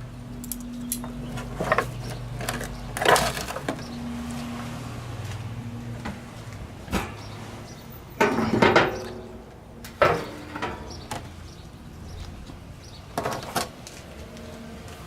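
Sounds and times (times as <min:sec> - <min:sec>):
metal knocking and clattering: 0:06.9 - 0:07.3, 0:08.2 - 0:11.3.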